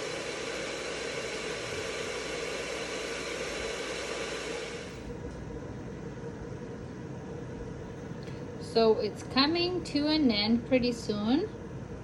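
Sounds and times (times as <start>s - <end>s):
electric kettle hissing: 0.0s - 6.8s.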